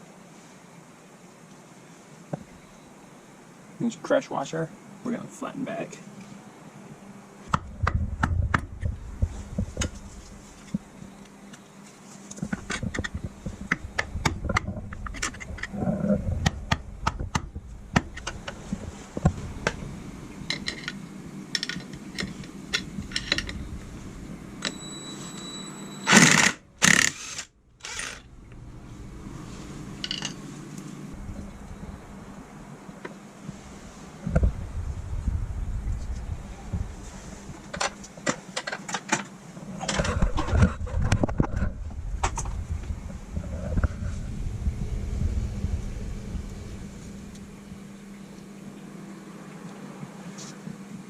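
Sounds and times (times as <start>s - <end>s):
steady low hum: 0.0s - 51.0s
metal tools clinking: 30.0s - 30.4s.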